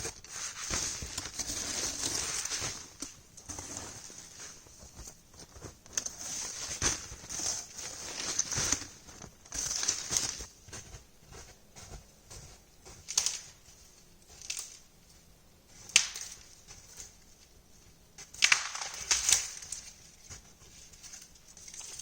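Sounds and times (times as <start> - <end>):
crunching and rustling in snow: 0.0 - 22.0.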